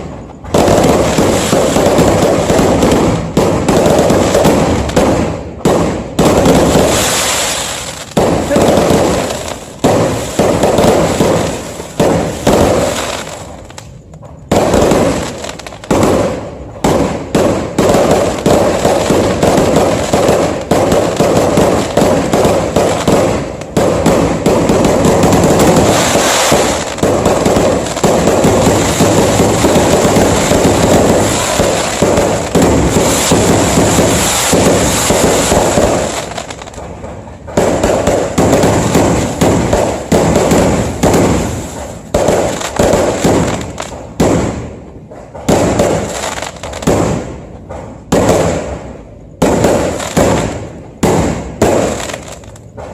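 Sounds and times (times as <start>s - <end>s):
fireworks bangs and crackles: 0.0s - 52.9s.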